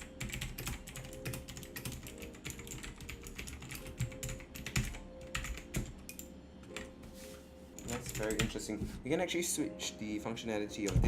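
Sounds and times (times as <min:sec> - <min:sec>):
mechanical keyboard typing: 0:00.0 - 0:06.9, 0:07.8 - 0:08.6.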